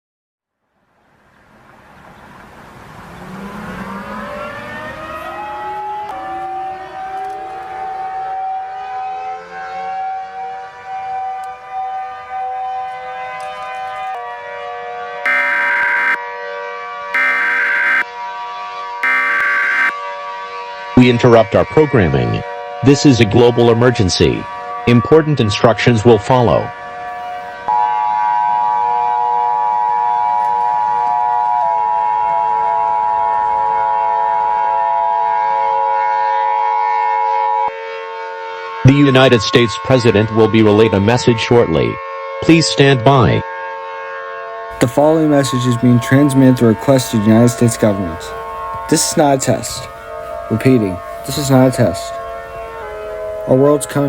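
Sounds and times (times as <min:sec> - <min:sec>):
siren wailing: 0:03.1 - 0:22.8, 0:26.7 - 0:42.4, 0:43.5 - 0:54.0
harsh two-tone alert signal: 0:15.3 - 0:16.2, 0:17.2 - 0:18.0, 0:19.0 - 0:19.9
lower steady tones: 0:15.3 - 0:16.2, 0:17.2 - 0:18.1, 0:19.0 - 0:20.0, 0:44.8 - 0:54.0.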